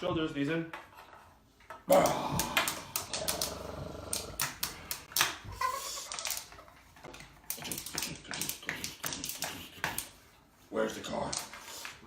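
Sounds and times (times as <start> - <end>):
animal-like vocal sounds: 1.9 - 4.8.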